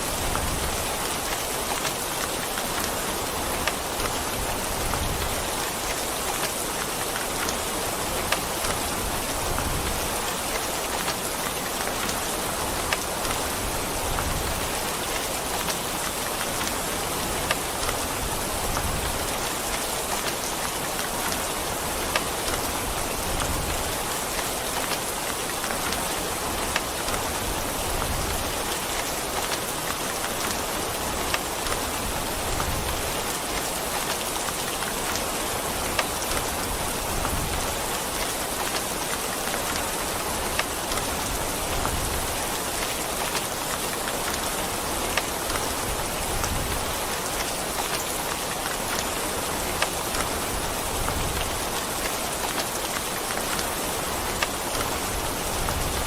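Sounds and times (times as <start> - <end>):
steady rain hiss: 0.0 - 56.0.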